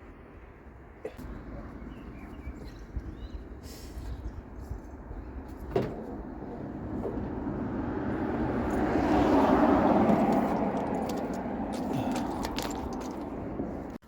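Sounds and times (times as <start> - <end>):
road vehicle passing by: 6.0 - 14.0.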